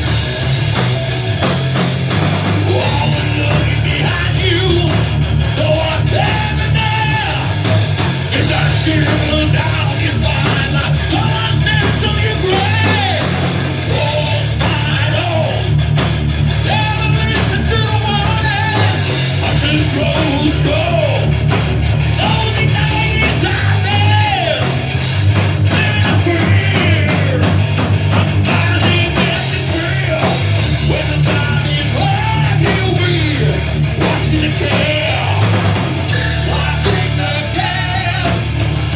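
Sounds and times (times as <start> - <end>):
live rock band playing: 0.0 - 38.9
person singing: 2.6 - 5.0, 25.8 - 27.6, 36.2 - 38.4.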